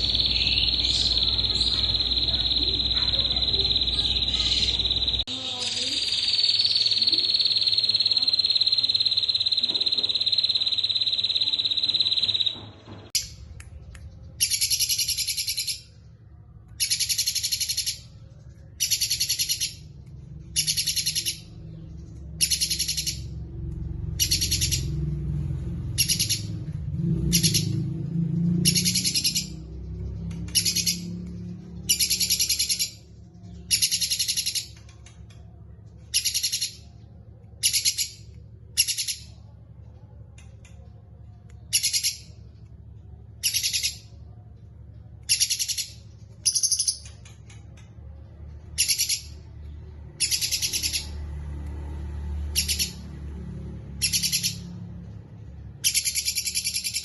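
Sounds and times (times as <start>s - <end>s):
songbird high trilled phrase: 0.0s - 12.6s.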